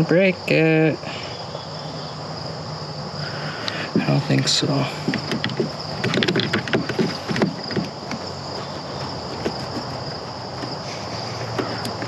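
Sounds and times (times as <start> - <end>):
high-pitched insect chirring: 0.0 - 12.0
light clicks and knocks: 3.7 - 12.0.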